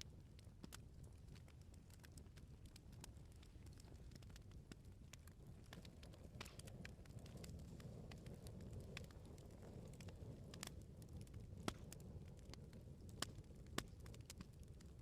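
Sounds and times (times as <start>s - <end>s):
bonfire crackling and popping: 0.0s - 15.0s
loud fire snaps: 0.3s - 15.0s.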